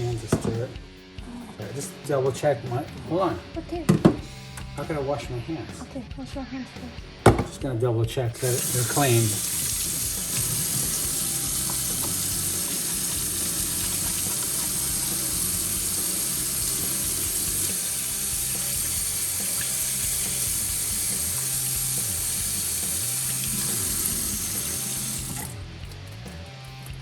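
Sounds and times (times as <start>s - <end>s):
hands washing under water: 8.4s - 25.6s
tap running into a sink: 8.4s - 25.6s.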